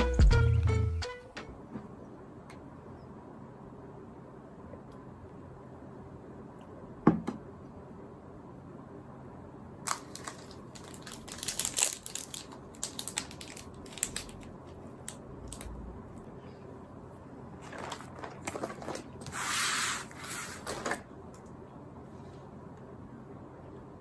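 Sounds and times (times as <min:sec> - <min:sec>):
rapid crinkling and clicking: 0:09.9 - 0:15.8.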